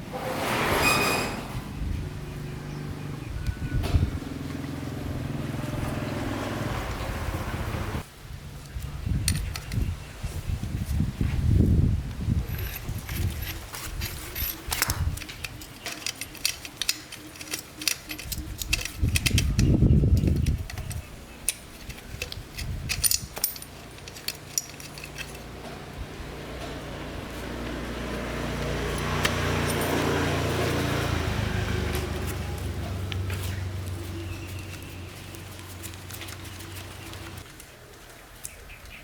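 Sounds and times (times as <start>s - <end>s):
low motor hum: 1.4s - 8.0s, 25.2s - 37.4s
small metal parts clinking: 9.2s - 9.8s, 12.5s - 26.0s, 28.9s - 30.8s.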